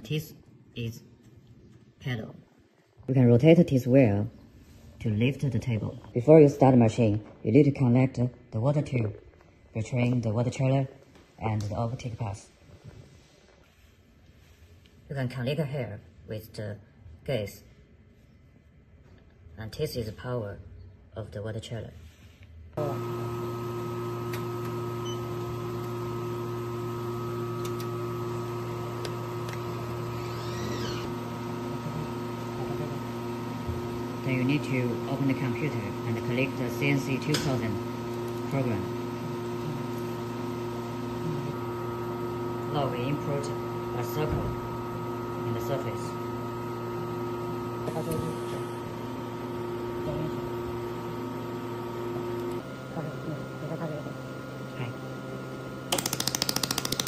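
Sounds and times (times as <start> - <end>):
water chiller humming: 22.8 - 57.0.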